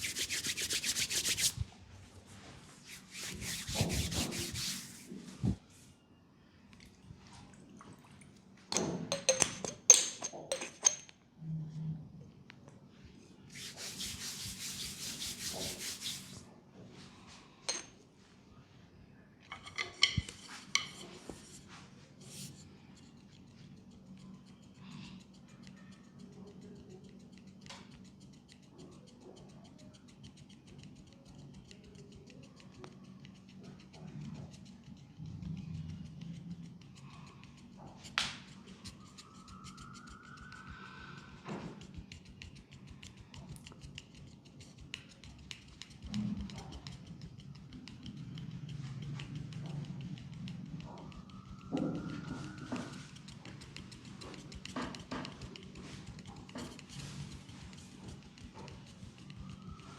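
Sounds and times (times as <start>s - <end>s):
hands rubbing skin: 0.0s - 1.7s, 2.6s - 5.4s, 13.5s - 16.4s, 38.0s - 40.7s
faint low hum: 11.1s - 59.9s.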